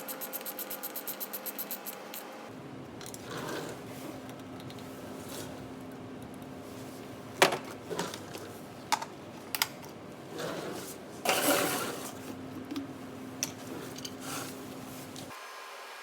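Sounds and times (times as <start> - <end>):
rustling scrape: 10.3 - 12.3.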